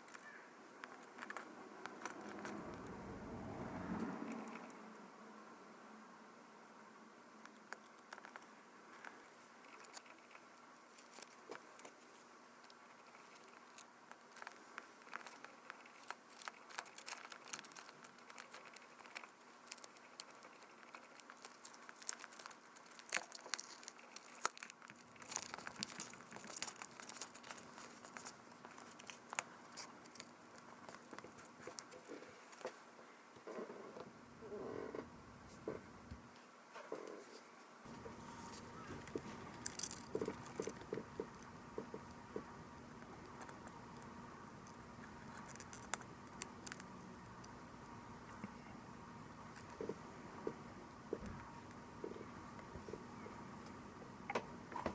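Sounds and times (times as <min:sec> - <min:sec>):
crinkling rustles: 0:07.7 - 0:32.9, 0:36.4 - 0:48.7.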